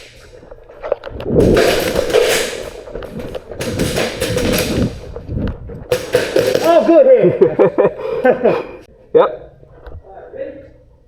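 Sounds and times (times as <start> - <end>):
airsoft gun bursts: 5.9 - 6.9.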